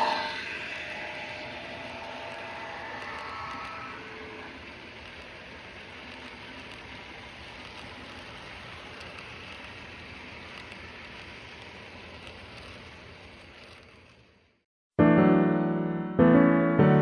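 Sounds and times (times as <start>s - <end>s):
steam locomotive hissing: 0.0s - 12.1s.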